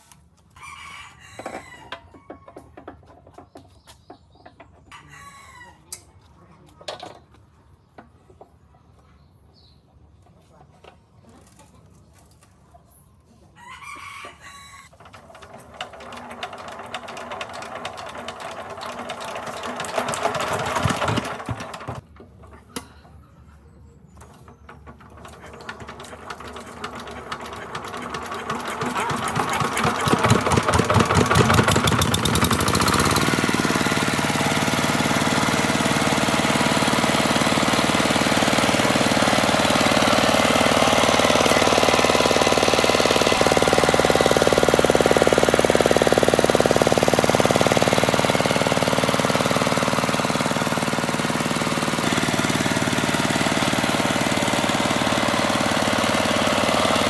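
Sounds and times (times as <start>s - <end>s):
rooster crowing: 0.6s - 2.6s, 4.9s - 5.9s, 13.6s - 15.0s
motorcycle engine starting and running: 14.9s - 22.9s, 24.1s - 57.0s.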